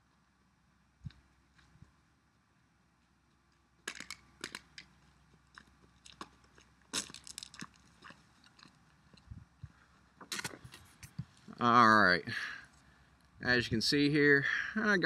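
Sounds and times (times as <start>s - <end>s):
crunching and rustling handling noise: 3.9s - 11.6s.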